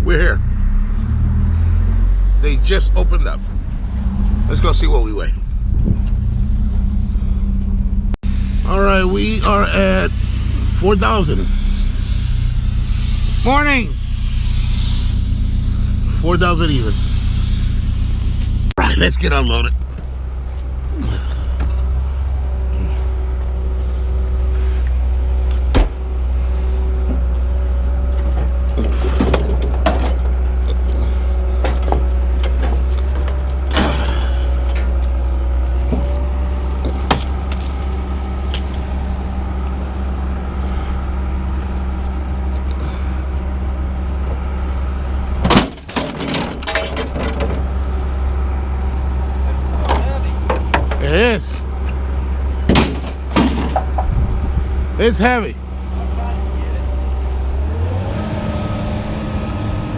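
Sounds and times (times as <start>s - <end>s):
engine rumbling: 0.0s - 59.9s
scrap metal clanking: 45.4s - 47.7s.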